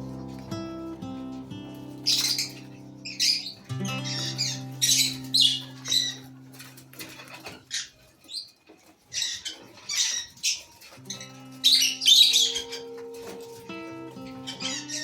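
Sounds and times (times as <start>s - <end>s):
lovebirds chirping and squeaking: 0.0s - 15.0s.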